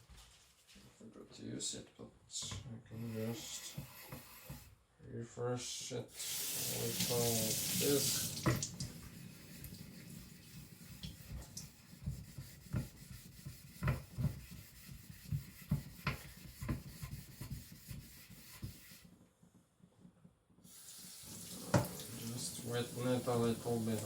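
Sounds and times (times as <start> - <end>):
gritty rubbing on whetstone: 3.0 - 4.7, 9.1 - 19.1.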